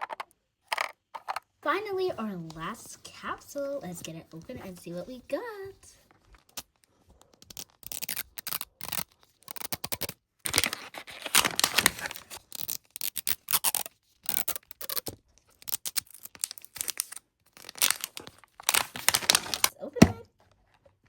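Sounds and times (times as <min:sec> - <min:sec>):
plastic packaging crinkling: 0:07.5 - 0:19.8.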